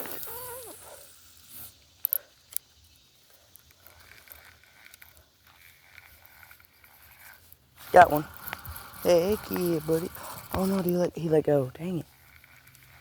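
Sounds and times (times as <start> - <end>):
fishing reel whirring: 0.0 - 13.0
fishing reel clicks: 3.5 - 11.0.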